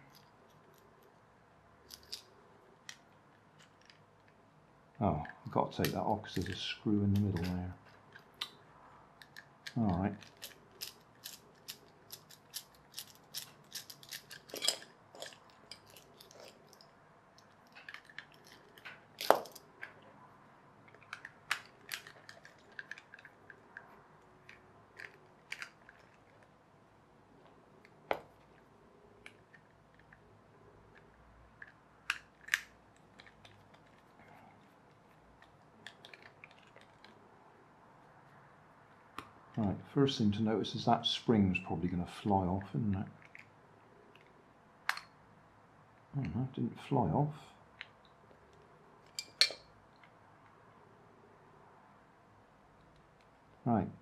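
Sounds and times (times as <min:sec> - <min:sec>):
plastic toy parts clicking: 0:01.8 - 0:04.4, 0:09.2 - 0:20.0, 0:20.9 - 0:26.5, 0:30.9 - 0:34.1.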